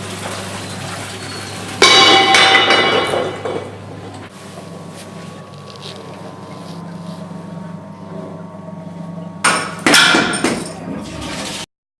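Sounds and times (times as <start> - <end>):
steady low hum: 1.8 - 11.1.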